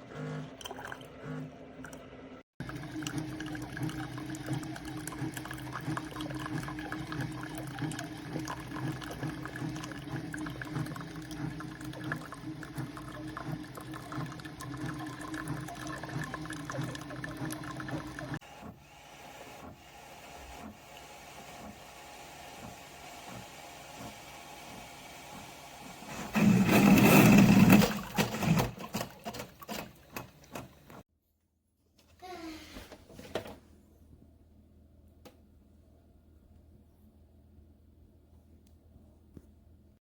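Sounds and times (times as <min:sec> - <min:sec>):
coffee maker pump humming: 0:00.0 - 0:31.0
water gurgling: 0:02.6 - 0:18.4.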